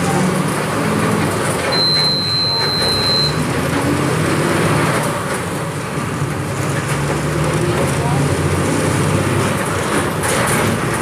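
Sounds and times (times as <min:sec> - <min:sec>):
bus engine running: 0:00.0 - 0:11.0
high steady beep: 0:01.7 - 0:03.4.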